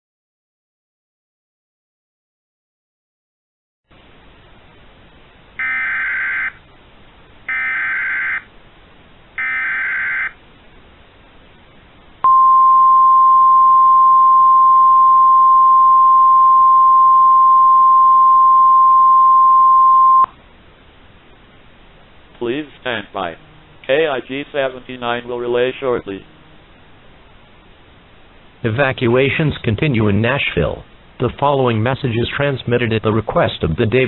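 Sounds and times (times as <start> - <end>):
steady loud alarm tone: 5.6 - 6.6, 7.5 - 8.5, 9.4 - 10.4.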